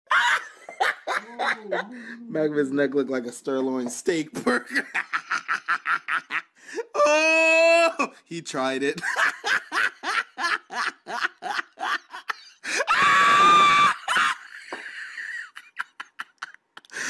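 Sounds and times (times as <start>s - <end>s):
person laughing hard: 0.1s - 1.9s, 9.0s - 17.0s.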